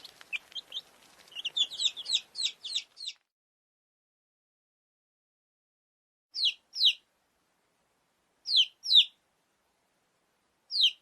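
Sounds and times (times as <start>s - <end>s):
chick peeping: 0.0s - 3.2s, 6.4s - 7.1s, 8.4s - 9.2s, 10.7s - 11.0s.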